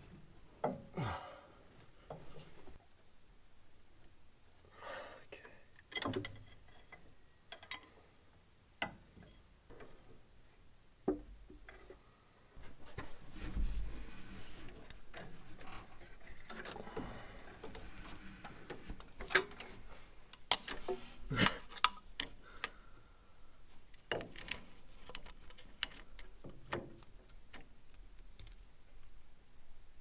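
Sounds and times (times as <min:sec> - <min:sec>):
metallic clicks and knocks: 0:05.8 - 0:07.9, 0:19.1 - 0:22.7.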